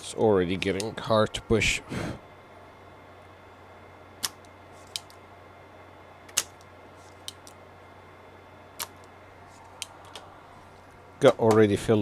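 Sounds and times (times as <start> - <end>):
desoldering pump clicking: 0.6 - 1.0, 4.2 - 5.2, 6.3 - 7.6, 8.8 - 10.3.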